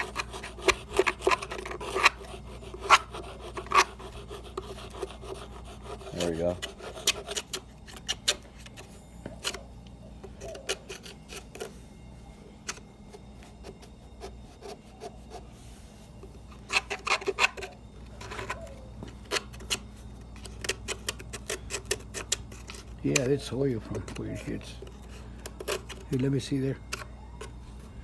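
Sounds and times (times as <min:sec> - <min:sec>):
screwdriver scraping plastic vents: 0:00.0 - 0:09.6, 0:23.9 - 0:26.3.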